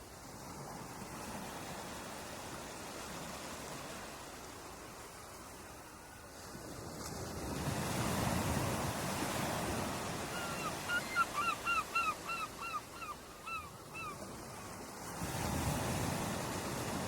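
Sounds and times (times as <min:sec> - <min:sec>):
ocean surf washing ashore: 0:00.0 - 0:17.0
seagull calling: 0:10.2 - 0:14.2.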